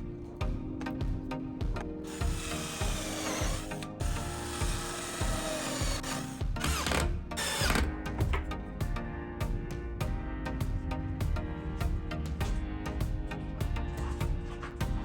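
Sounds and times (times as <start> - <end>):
background music: 0.0 - 15.0
power tool cutting wood: 2.1 - 8.0.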